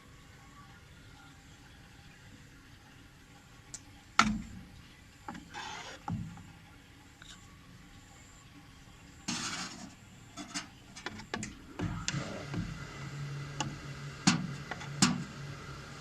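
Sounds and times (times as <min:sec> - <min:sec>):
electric fan motor humming: 0:11.4 - 0:16.0.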